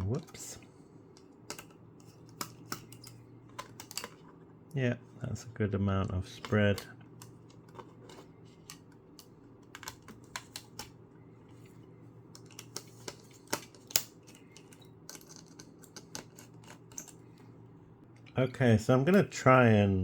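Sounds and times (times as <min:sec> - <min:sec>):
faint steady hum: 0:00.0 - 0:20.0
small laptop parts clicking: 0:07.2 - 0:11.0, 0:12.3 - 0:17.2.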